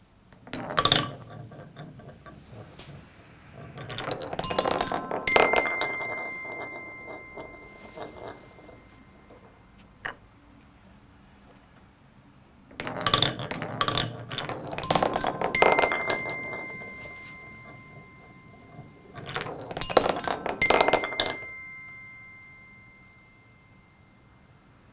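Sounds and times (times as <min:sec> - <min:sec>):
balls clattering down wooden blocks: 0:00.4 - 0:10.4, 0:12.7 - 0:22.8
metallophone keys chiming: 0:04.3 - 0:09.8, 0:14.7 - 0:24.9.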